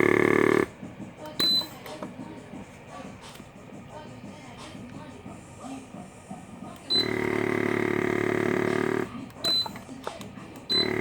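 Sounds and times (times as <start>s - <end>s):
electric vacuum pump humming: 0.0s - 11.0s
short beeps: 1.4s - 1.8s.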